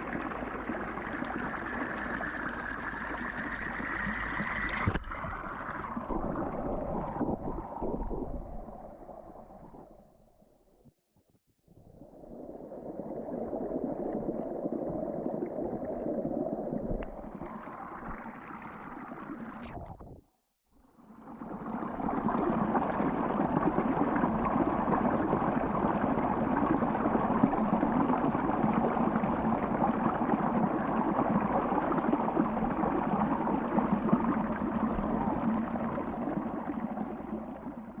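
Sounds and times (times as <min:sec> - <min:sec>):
bubbling water: 0:00.0 - 0:10.2, 0:12.0 - 0:20.2, 0:21.1 - 0:38.0
muffled underwater gurgling: 0:00.0 - 0:10.2, 0:21.1 - 0:38.0.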